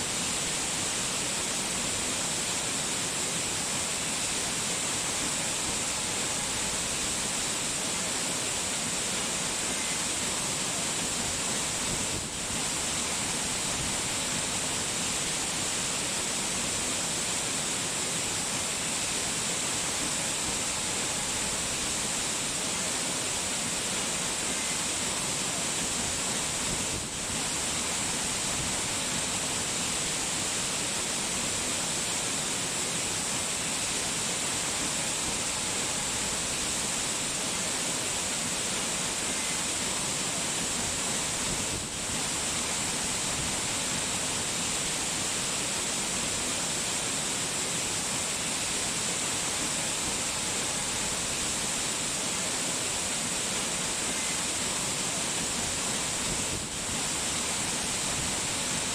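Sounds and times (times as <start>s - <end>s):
rushing water: 0.0s - 58.9s.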